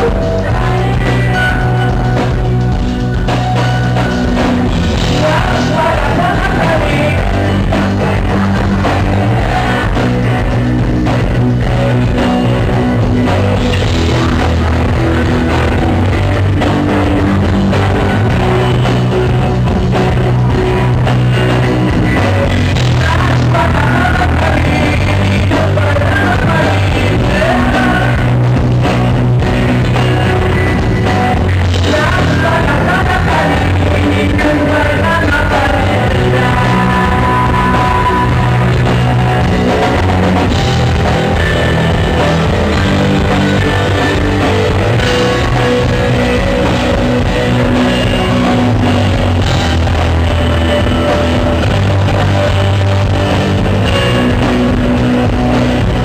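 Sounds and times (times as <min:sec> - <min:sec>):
bass guitar: 0:00.0 - 0:56.0
distorted electric guitars: 0:00.0 - 0:56.0
drum kit: 0:00.0 - 0:56.0
man singing lead: 0:00.0 - 0:56.0.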